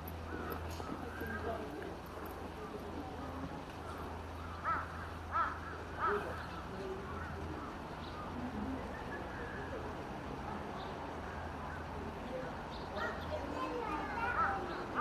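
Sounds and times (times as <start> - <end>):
crow cawing: 4.4 - 6.4.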